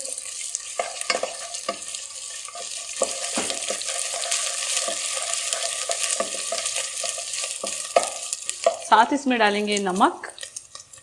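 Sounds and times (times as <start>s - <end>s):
onions sizzling in hot oil: 0.0s - 11.0s
spoon scraping a pot: 0.6s - 8.9s.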